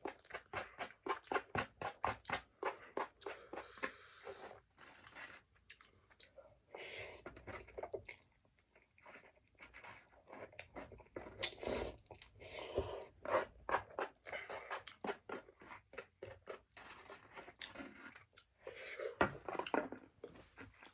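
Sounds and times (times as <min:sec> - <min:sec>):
person chewing noodles: 0:02.6 - 0:06.7, 0:07.6 - 0:08.4, 0:13.8 - 0:15.2.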